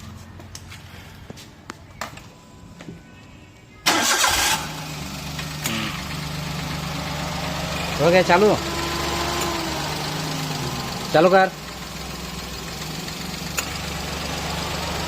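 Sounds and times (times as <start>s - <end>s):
car engine starting and idling: 3.7s - 15.0s.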